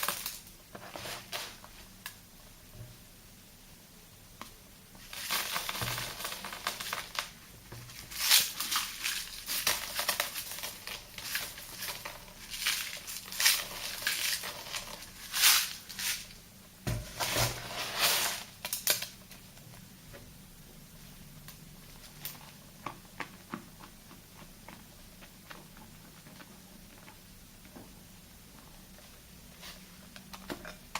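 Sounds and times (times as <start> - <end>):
scratchy crackling paste strokes: 0.8 - 1.9, 17.2 - 18.5.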